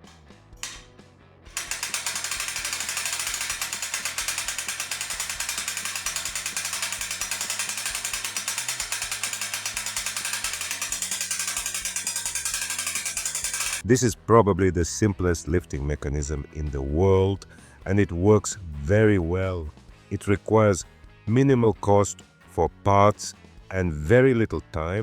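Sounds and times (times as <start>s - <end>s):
winch ratchet clicking: 1.5s - 13.8s.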